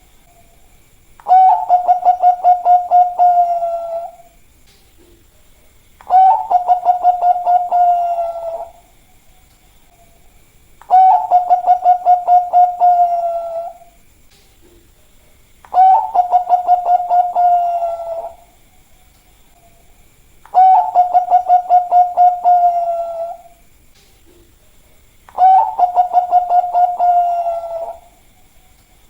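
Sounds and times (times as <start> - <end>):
dove cooing: 1.2 - 4.4, 6.0 - 8.9, 10.8 - 14.0, 15.7 - 18.6, 20.5 - 23.6, 25.3 - 28.2.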